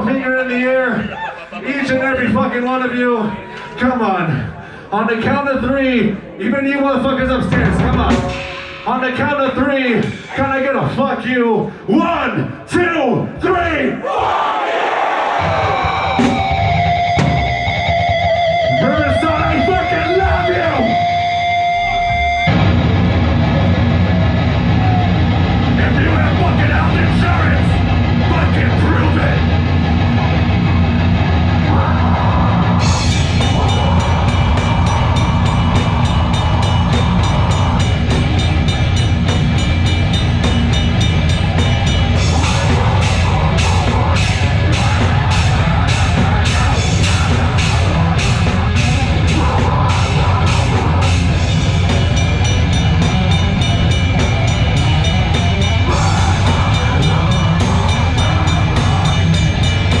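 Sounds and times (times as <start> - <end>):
heavy metal band playing: 0.0 - 4.1, 6.9 - 11.3, 15.3 - 60.0
fast drumming: 7.4 - 10.6, 15.4 - 20.9, 24.4 - 30.9, 31.7 - 60.0
cymbals: 7.8 - 10.4, 32.8 - 60.0.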